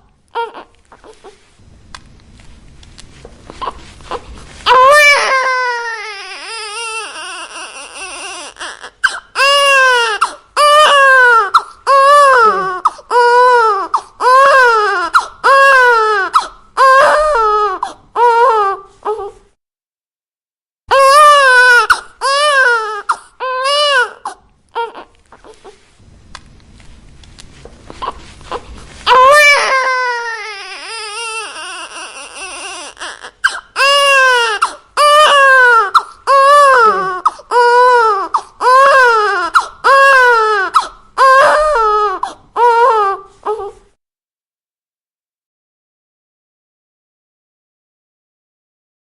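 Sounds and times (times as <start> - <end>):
newborn baby crying: 0.3 - 1.4, 3.5 - 19.5, 20.9 - 25.8, 27.9 - 43.9.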